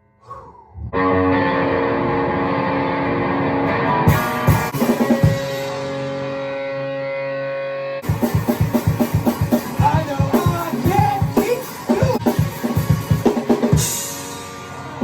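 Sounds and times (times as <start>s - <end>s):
rock band playing: 1.0s - 15.0s
cymbal crash: 11.7s - 15.0s.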